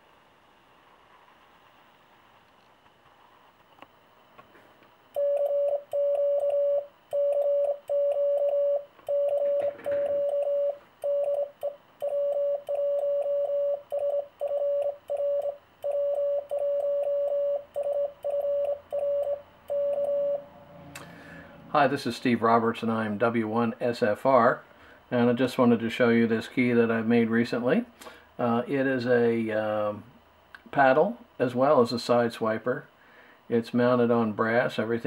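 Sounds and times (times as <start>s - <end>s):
morse code beeping: 5.2s - 20.5s.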